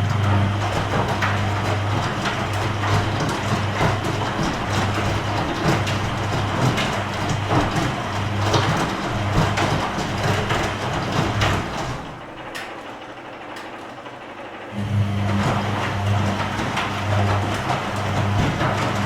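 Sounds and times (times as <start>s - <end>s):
washing machine motor hum: 0.0s - 19.0s
laundry tumbling swishes and knocks: 15.2s - 19.0s.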